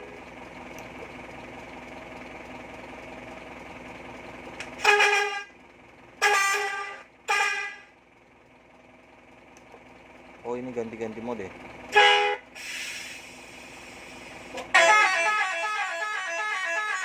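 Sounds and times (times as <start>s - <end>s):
bus horn blasts: 4.7s - 5.6s, 6.2s - 7.9s, 11.9s - 12.8s, 14.6s - 17.0s.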